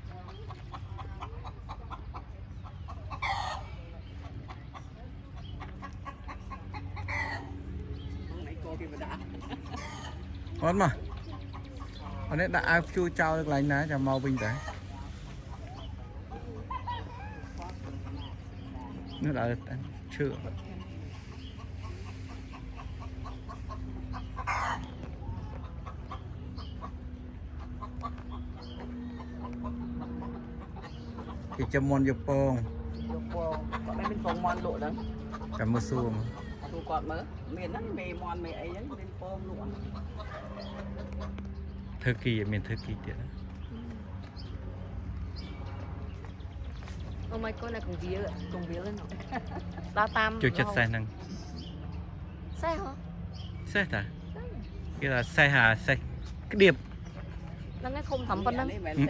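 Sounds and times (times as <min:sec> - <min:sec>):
chickens clucking: 0:00.0 - 0:59.0
chicken squawk: 0:02.9 - 0:04.3, 0:05.8 - 0:07.6, 0:09.4 - 0:10.3, 0:14.2 - 0:18.3, 0:21.1 - 0:26.2
chicken squawks: 0:03.0 - 0:03.8, 0:06.0 - 0:07.6, 0:24.4 - 0:25.0.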